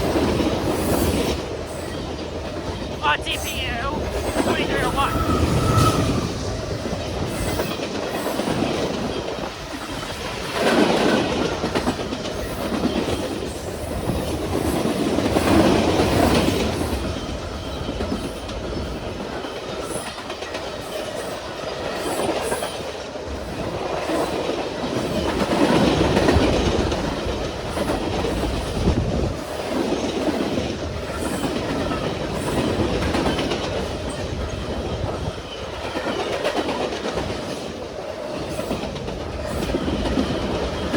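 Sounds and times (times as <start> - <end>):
freight train wheels on rails: 25.1 - 40.9.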